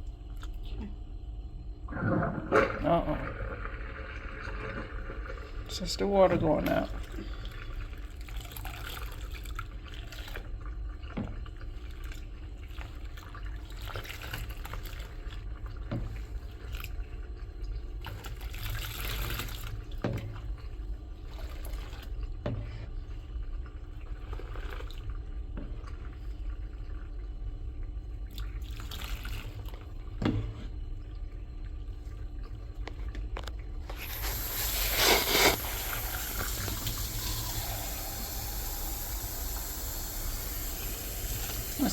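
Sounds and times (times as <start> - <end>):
bathwater draining with gurgle: 1.8 - 41.9
tap water running: 1.9 - 16.3, 32.4 - 41.9
small knocks and splashes: 8.2 - 26.9.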